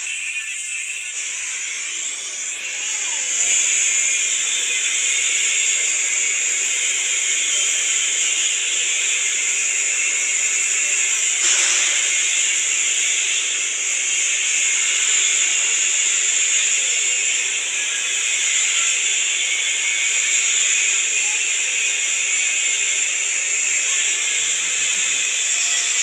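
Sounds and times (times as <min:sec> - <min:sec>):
electric arc welding hiss: 0:00.0 - 0:26.0.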